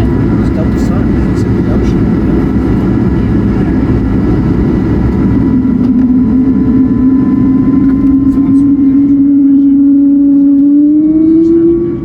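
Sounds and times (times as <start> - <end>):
jet engines rumbling in cabin: 0.0 - 12.0
humming tone: 1.1 - 12.0.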